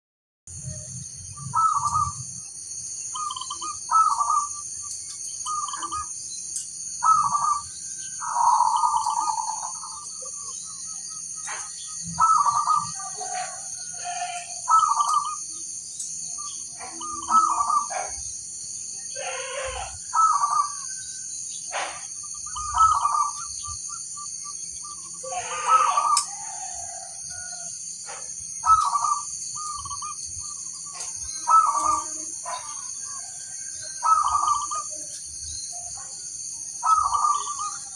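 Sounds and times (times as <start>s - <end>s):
dove cooing: 1.4s - 2.3s, 3.2s - 4.6s, 5.4s - 6.1s, 7.0s - 15.4s, 16.4s - 18.3s, 19.1s - 21.0s, 21.7s - 23.8s, 25.2s - 35.1s, 36.8s - 37.9s.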